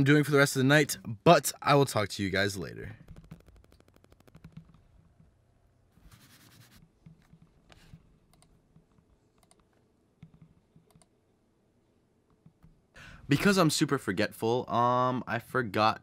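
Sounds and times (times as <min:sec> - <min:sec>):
soft clicks: 0:07.0 - 0:11.2.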